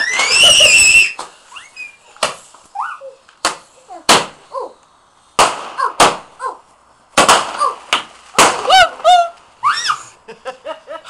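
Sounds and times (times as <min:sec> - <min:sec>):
fireworks bangs: 0:00.0 - 0:01.4, 0:03.4 - 0:04.4, 0:05.4 - 0:09.3
crackling hiss: 0:00.0 - 0:11.0.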